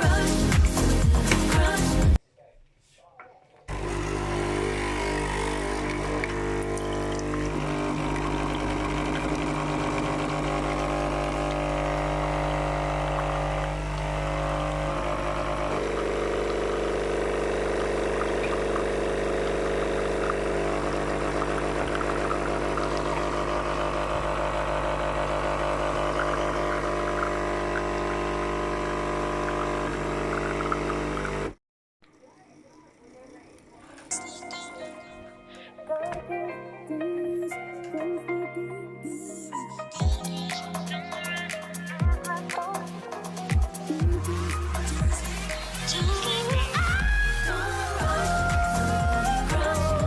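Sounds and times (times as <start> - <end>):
coffee machine pump humming: 3.7 - 31.6, 44.0 - 50.0.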